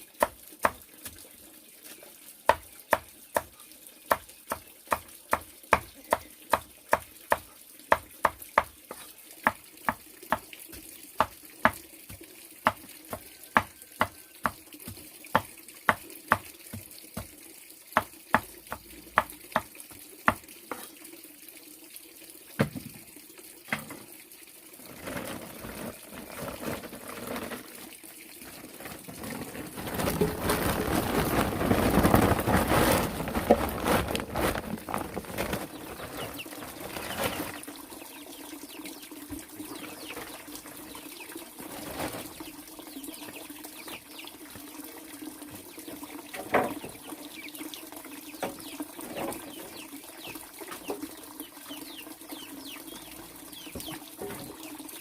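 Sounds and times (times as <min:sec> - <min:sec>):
water splashing: 0:24.8 - 0:37.7.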